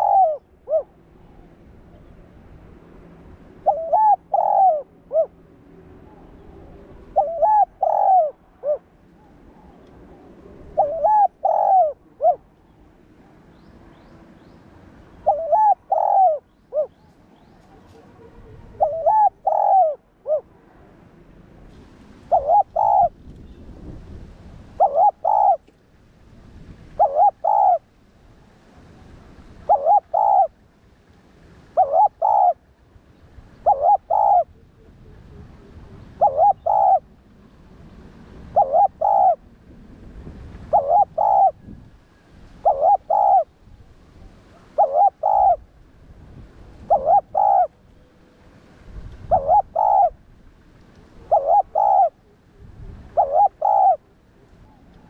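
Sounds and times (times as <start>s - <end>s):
dove cooing: 0.0s - 2.2s, 3.6s - 5.4s, 6.0s - 12.7s, 15.2s - 20.5s, 22.3s - 23.2s, 24.8s - 25.7s, 27.0s - 27.8s, 29.6s - 30.6s, 31.7s - 32.6s, 33.6s - 37.2s, 38.5s - 39.5s, 40.7s - 41.8s, 42.6s - 43.5s, 44.2s - 45.6s, 46.8s - 47.8s, 49.2s - 50.2s, 51.0s - 55.0s.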